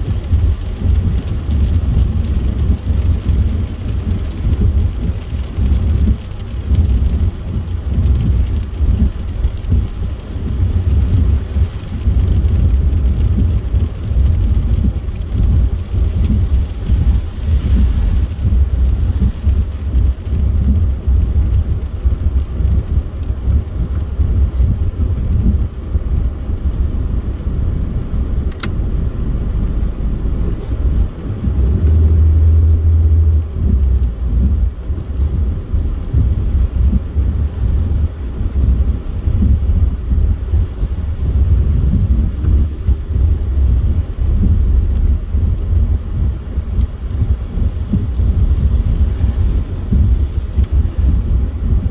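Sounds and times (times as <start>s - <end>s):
road and tyre rumble: 0.0s - 51.9s
sharp click: 28.5s - 28.8s.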